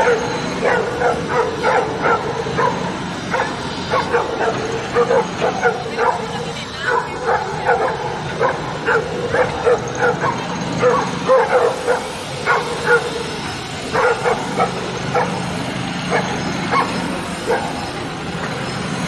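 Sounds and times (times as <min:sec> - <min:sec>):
dogs barking: 0:00.0 - 0:19.0.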